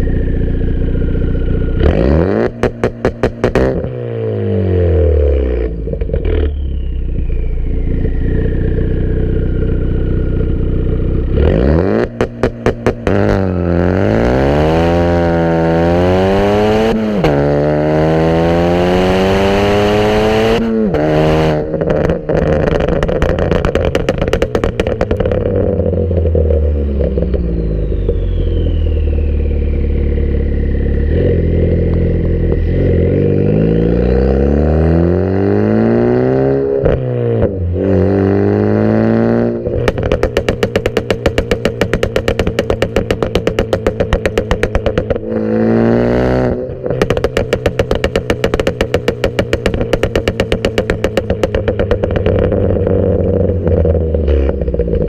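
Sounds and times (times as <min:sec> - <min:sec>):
car engine idling and revving: 0:00.0 - 0:55.0
exhaust pops and crackles: 0:01.8 - 0:04.0, 0:10.4 - 0:17.6, 0:21.6 - 0:32.7, 0:39.6 - 0:45.4, 0:46.4 - 0:55.0.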